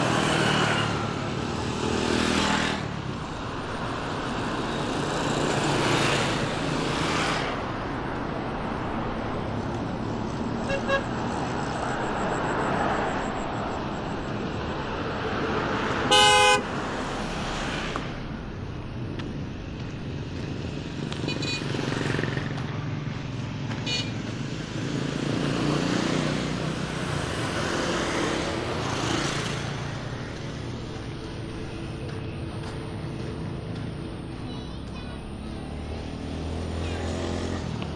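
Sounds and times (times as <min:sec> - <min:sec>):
road traffic passing: 0:00.0 - 0:37.9
loud horn blast: 0:10.6 - 0:11.1, 0:16.0 - 0:16.8
short high-pitched beeps: 0:10.6 - 0:15.1.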